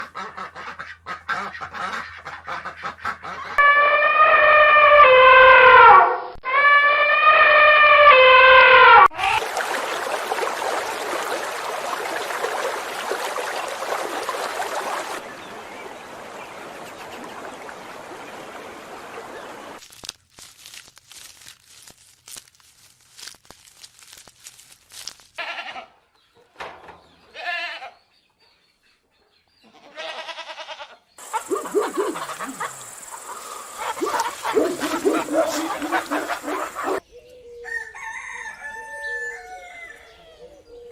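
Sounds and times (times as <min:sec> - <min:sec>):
animal bleating calls: 0:25.4 - 0:25.9, 0:27.3 - 0:28.0, 0:29.6 - 0:31.1.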